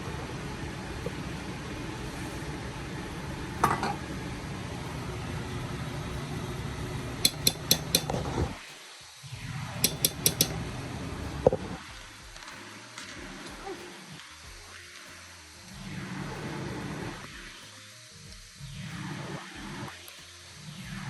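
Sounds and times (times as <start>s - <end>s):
steady hiss: 0.0s - 21.0s
kitchenware clinking: 3.6s - 4.0s, 7.2s - 8.3s, 9.8s - 10.6s.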